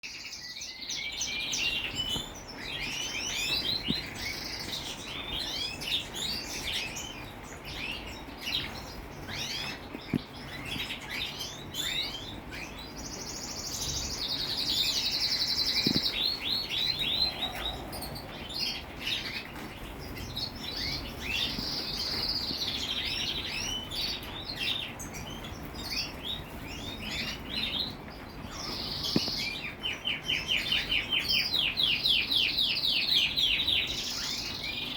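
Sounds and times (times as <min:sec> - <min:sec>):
small birds chirping: 0:00.0 - 0:34.9.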